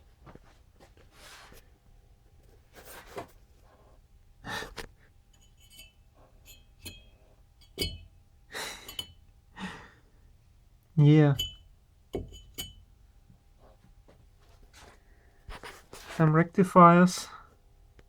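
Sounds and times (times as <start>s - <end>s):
person breathing and sighing: 4.4s - 4.9s, 9.6s - 10.1s.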